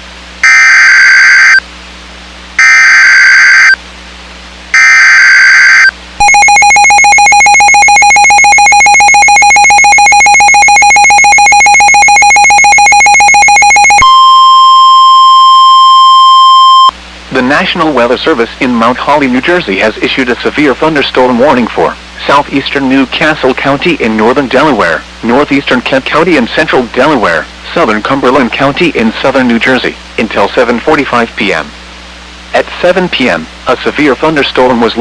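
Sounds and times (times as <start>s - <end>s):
two-tone attention signal: 0.4s - 1.6s, 2.6s - 3.8s, 4.8s - 17.0s
screechy digital data bursts: 4.8s - 14.0s
single steady tone: 5.3s - 17.0s.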